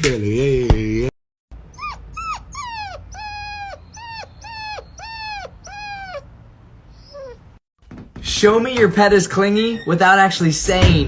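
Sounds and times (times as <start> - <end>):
dog whining: 1.6 - 7.6.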